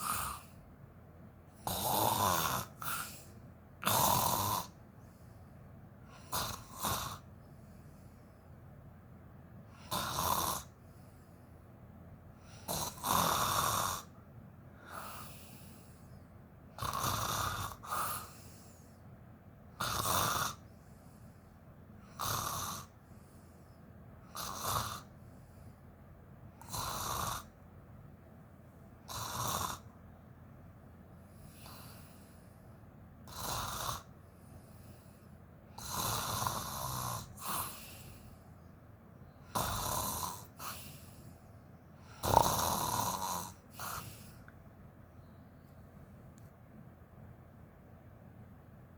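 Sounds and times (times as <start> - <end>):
woman snoring: 0.0 - 0.7, 1.6 - 4.8, 6.1 - 7.4, 9.7 - 10.8, 12.4 - 14.2, 14.8 - 15.9, 16.8 - 18.8, 19.8 - 20.7, 22.0 - 23.0, 24.3 - 25.2, 26.6 - 27.6, 29.0 - 29.9, 31.5 - 32.2, 33.2 - 34.2, 35.7 - 38.3, 39.4 - 41.2, 42.0 - 44.5.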